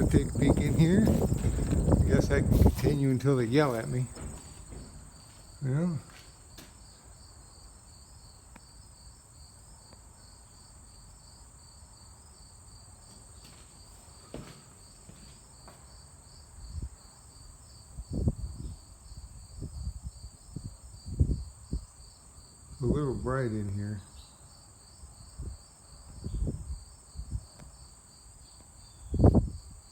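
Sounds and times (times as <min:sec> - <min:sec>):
low thumps and knocks: 0:00.0 - 0:06.7
crickets chirping: 0:00.0 - 0:29.9.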